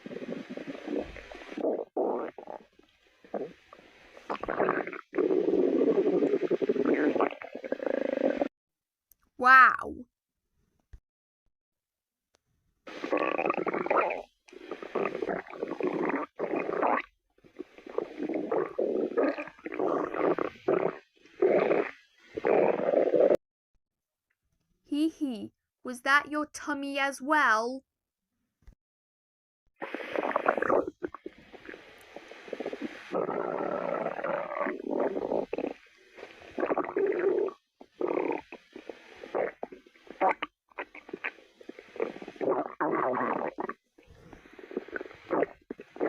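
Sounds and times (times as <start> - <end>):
stomach growling: 0.0 - 8.5, 12.9 - 23.4, 29.8 - 46.0.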